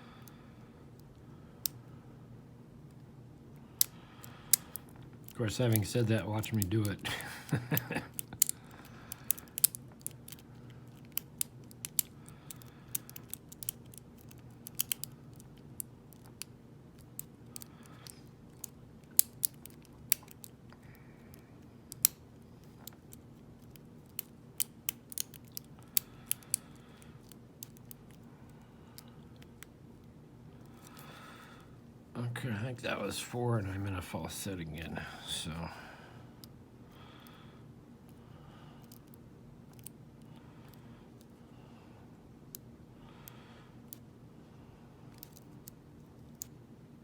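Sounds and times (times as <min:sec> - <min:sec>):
lock pick metallic clicks: 0:03.8 - 0:08.6, 0:09.2 - 0:20.6, 0:22.9 - 0:26.6.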